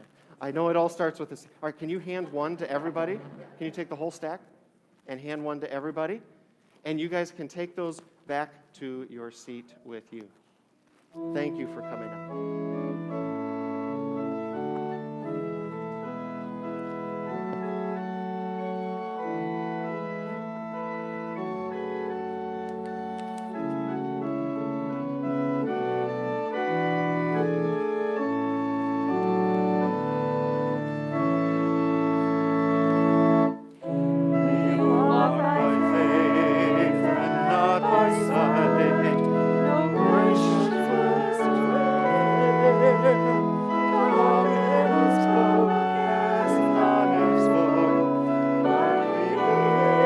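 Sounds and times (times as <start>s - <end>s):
church organ playing chords: 11.2s - 50.0s.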